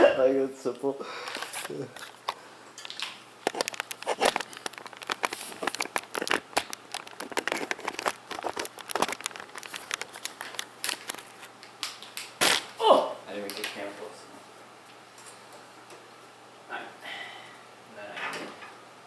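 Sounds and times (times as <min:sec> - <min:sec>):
plastic packaging crinkling: 0:01.2 - 0:12.7.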